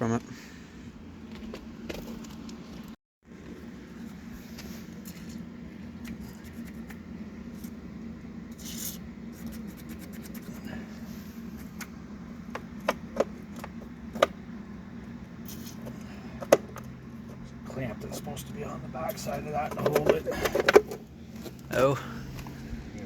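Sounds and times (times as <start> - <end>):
low hum: 0.0 - 23.0
tools rubbing and scraping: 8.5 - 14.3, 15.4 - 18.4.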